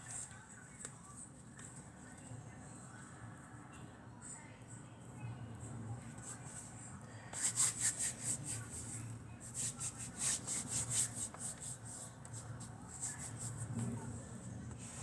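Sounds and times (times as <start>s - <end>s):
hands rubbing dough: 7.4s - 13.8s.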